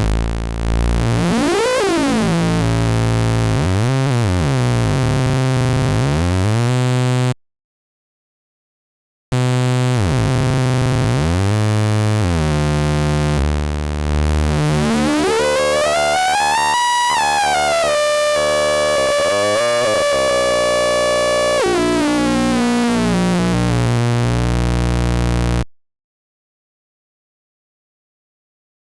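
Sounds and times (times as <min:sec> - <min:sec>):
synthesizer tone sweeping: 0:14.7 - 0:23.9.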